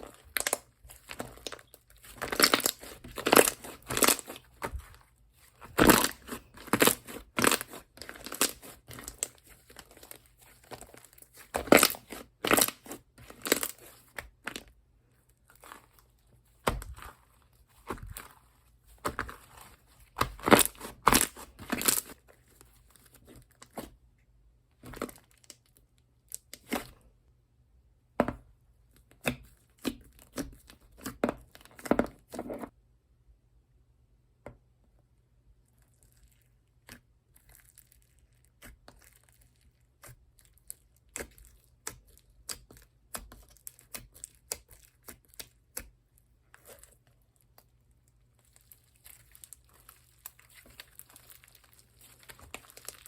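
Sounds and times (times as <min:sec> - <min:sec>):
slime squishing and popping: 0:00.0 - 0:14.7, 0:19.0 - 0:22.2, 0:48.4 - 0:53.0.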